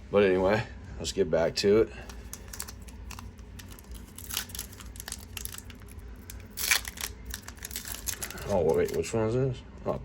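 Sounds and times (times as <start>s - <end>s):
foil wrapper crinkling: 2.1s - 9.1s.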